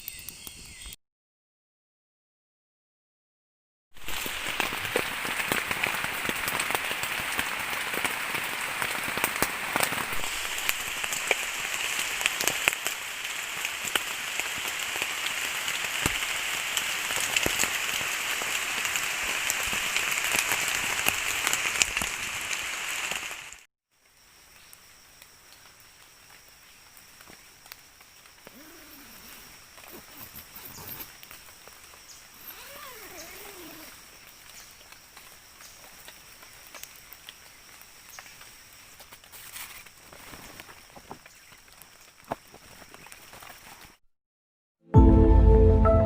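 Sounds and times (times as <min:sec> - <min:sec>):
heavy rain falling: 0:04.0 - 0:23.7, 0:30.9 - 0:39.0.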